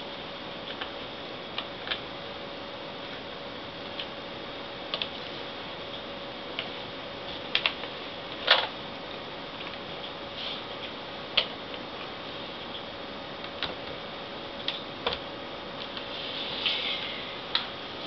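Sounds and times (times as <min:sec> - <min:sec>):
faint hum: 0:00.0 - 0:18.0
steady hiss: 0:08.8 - 0:11.2, 0:15.6 - 0:18.0.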